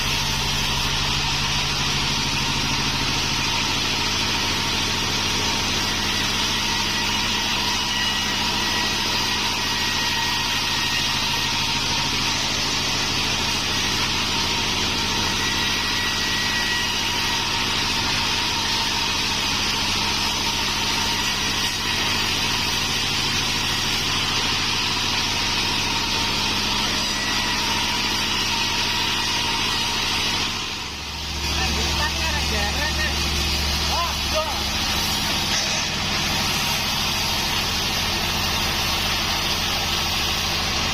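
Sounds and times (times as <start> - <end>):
band sawmill running: 0.0 - 40.9.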